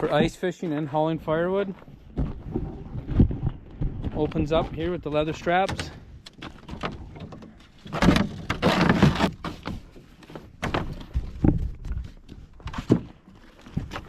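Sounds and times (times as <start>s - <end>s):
gear thunking and rustling: 1.8s - 14.0s
scraping rustle: 6.4s - 14.0s.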